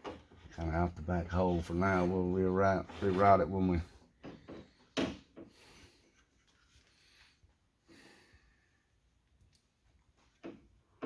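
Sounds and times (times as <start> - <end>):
faint breath: 4.8 - 9.0.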